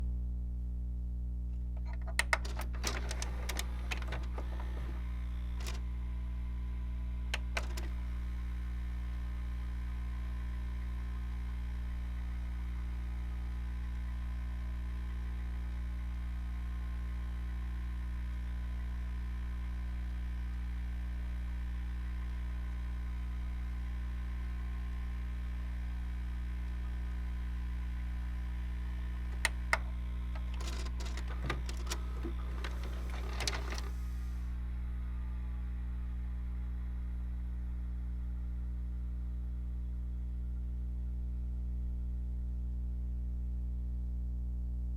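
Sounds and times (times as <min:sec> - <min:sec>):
low electrical hum: 0:00.0 - 0:44.9
vcr clicks: 0:01.8 - 0:05.8, 0:07.4 - 0:08.0, 0:29.4 - 0:34.0.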